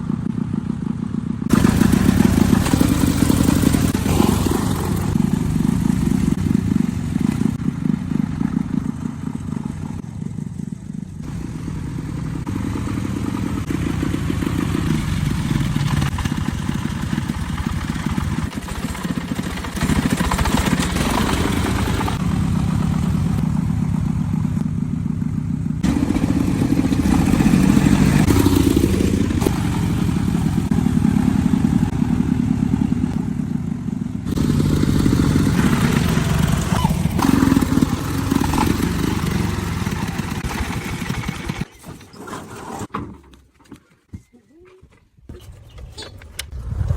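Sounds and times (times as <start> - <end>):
clatter: 0.3 - 10.4, 12.4 - 30.8, 34.3 - 42.9.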